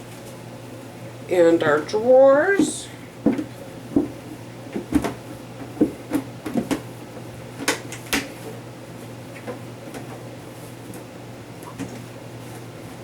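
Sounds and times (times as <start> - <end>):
plastic drawers knocking and clattering: 4.8 - 6.9.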